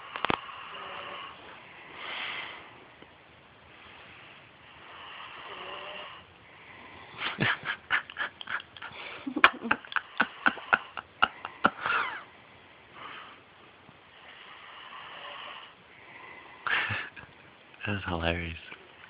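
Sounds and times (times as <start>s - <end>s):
child snoring: 0.0s - 1.4s, 4.7s - 7.2s, 14.2s - 16.4s
soft breath: 0.0s - 3.0s.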